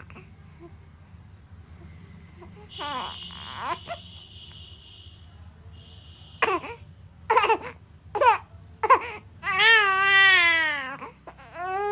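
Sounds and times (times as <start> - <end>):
infant crying: 2.8 - 4.0, 6.4 - 11.9.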